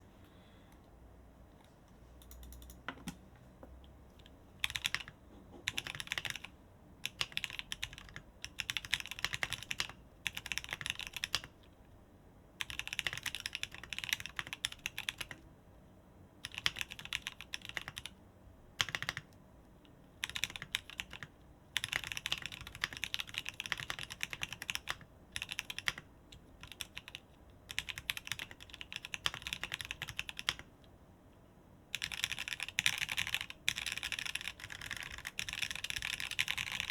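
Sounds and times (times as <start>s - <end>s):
keyboard typing clicks: 2.2s - 3.2s, 4.2s - 11.5s.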